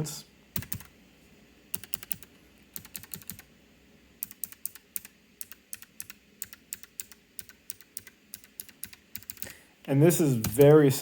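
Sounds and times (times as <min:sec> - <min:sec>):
clicky mechanical keyboard typing: 0:00.6 - 0:00.9, 0:01.7 - 0:03.5, 0:04.2 - 0:09.5, 0:10.4 - 0:10.8.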